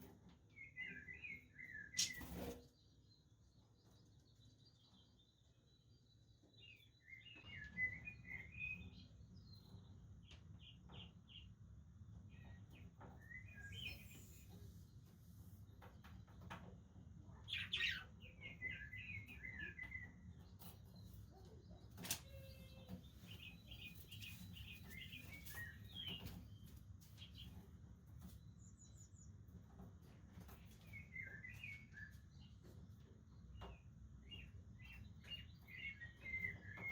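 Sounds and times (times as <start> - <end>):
budgerigars chirping and warbling: 17.5 - 19.8.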